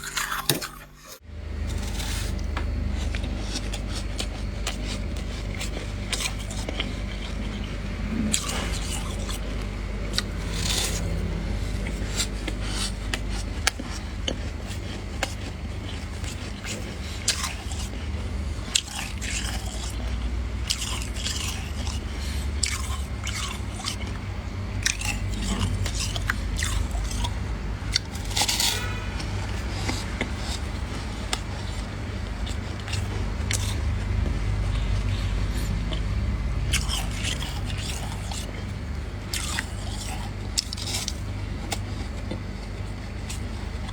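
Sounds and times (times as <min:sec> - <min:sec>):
frost being scraped: 0:00.0 - 0:02.4
crunching and chewing: 0:00.0 - 0:43.9
low steady rumble: 0:00.0 - 0:43.9.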